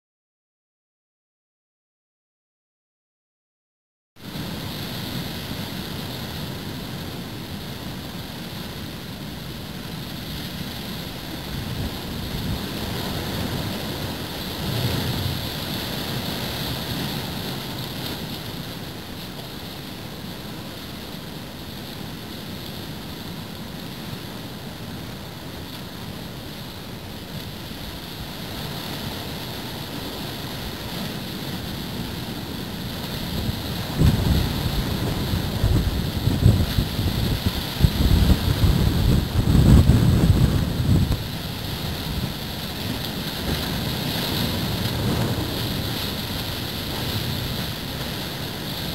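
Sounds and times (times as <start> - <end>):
surf washing against harbour: 4.2 - 48.9
wind buffeting microphone: 9.6 - 19.1, 27.0 - 48.9.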